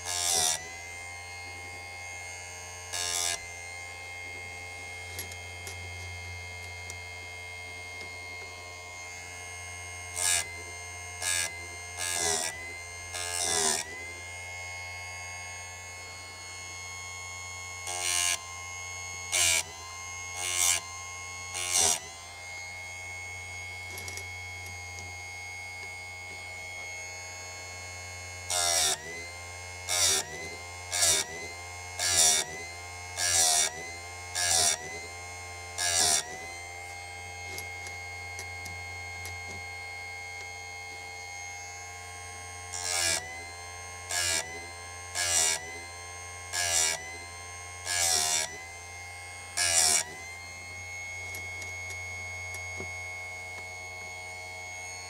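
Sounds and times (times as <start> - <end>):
grinder motor whine: 0.0 - 55.0
grinding wheel rasping on chain: 10.1 - 14.3, 28.5 - 38.5, 42.7 - 51.7.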